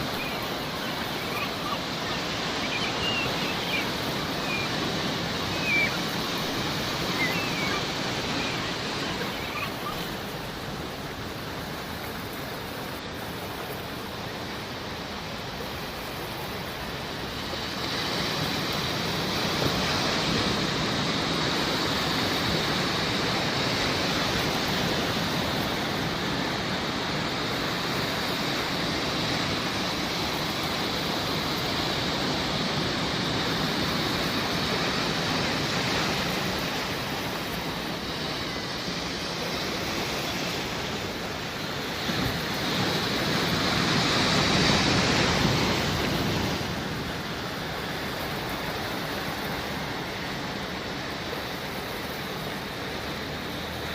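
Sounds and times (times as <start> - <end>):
seagull calls: 0.0 - 10.4
sea waves washing on shore: 0.0 - 53.9.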